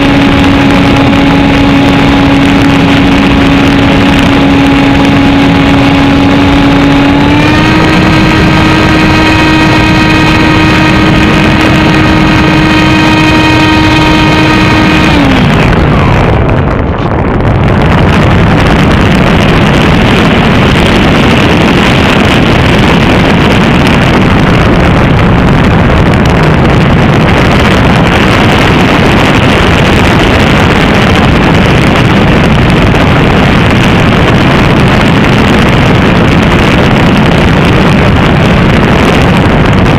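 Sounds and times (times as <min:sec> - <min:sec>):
electric motor whining: 0:00.0 - 0:18.0
wind rushing on microphone: 0:00.0 - 0:39.9.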